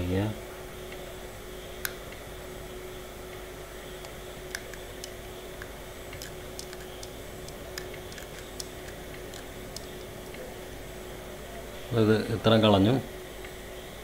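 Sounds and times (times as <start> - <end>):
low electrical hum: 0.0 - 14.0
scraping ticks and scratches: 4.5 - 10.4.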